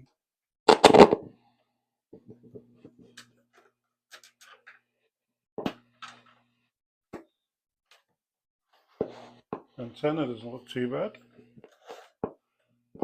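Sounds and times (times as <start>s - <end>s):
scratchy clicks and crackles: 0.7s - 1.3s.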